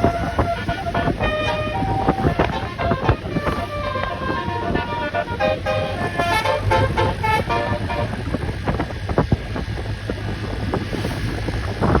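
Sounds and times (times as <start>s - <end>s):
bus air horn melody: 0.0s - 8.6s.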